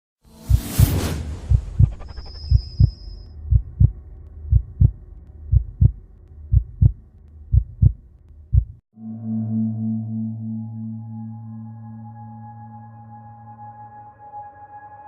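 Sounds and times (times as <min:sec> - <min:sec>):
slow heartbeat thumps: 0:00.4 - 0:08.8
steady low hum: 0:01.3 - 0:08.8.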